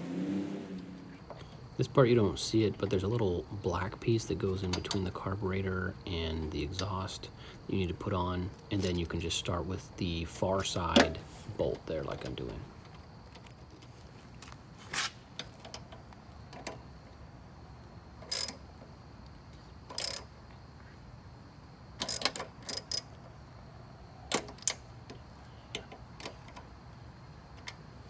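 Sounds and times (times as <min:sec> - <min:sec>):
wrench clicking on bolts: 0:18.2 - 0:18.6, 0:19.9 - 0:20.3, 0:22.0 - 0:23.1.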